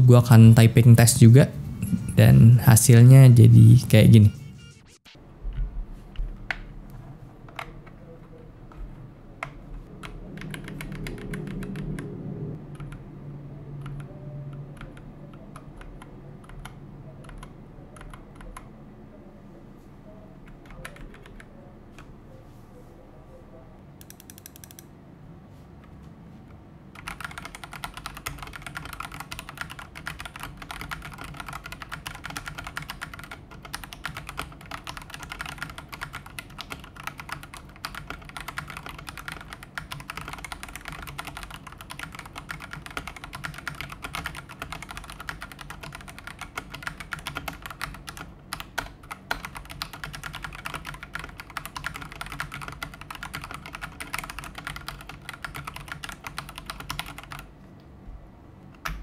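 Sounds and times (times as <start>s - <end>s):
mechanical keyboard typing: 8.7s - 12.1s, 12.7s - 13.0s, 13.8s - 18.7s, 20.5s - 21.5s, 24.0s - 24.9s, 27.0s - 57.5s, 58.8s - 59.0s.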